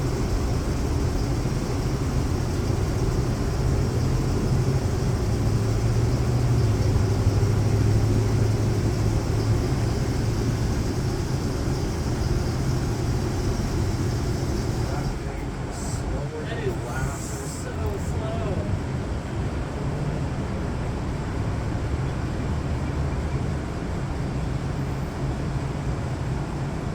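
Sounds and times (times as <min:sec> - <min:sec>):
rushing noise: 0:00.0 - 0:17.9
elevator machinery humming: 0:00.0 - 0:18.2.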